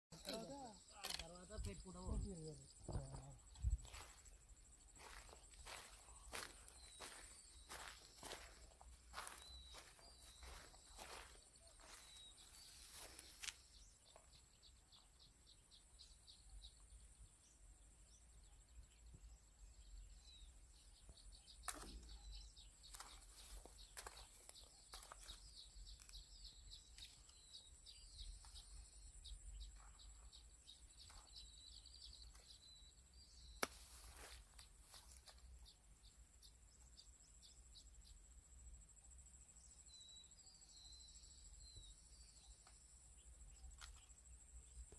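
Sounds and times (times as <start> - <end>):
small birds twittering: 0.1 - 44.9.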